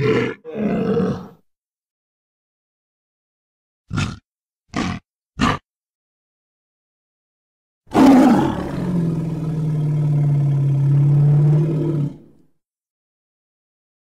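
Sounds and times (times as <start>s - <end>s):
gorilla roar: 0.0s - 1.4s, 3.9s - 5.6s, 7.9s - 12.4s.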